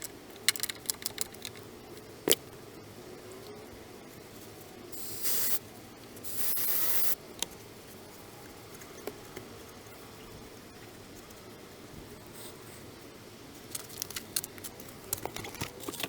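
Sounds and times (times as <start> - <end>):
hissing spray bursts: 5.0 - 5.6, 6.2 - 7.2.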